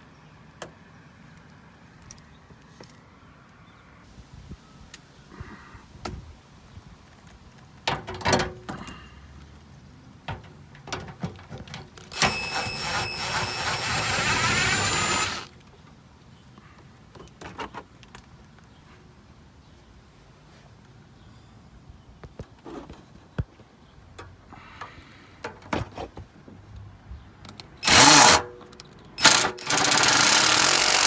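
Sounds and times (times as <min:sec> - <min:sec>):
handheld power tool running: 0:12.1 - 0:15.5, 0:27.8 - 0:28.4, 0:29.2 - 0:31.0.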